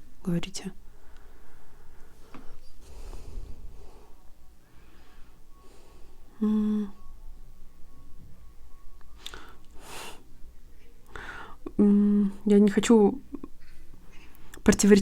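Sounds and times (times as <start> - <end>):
woman humming: 6.3 - 7.3, 11.6 - 12.5.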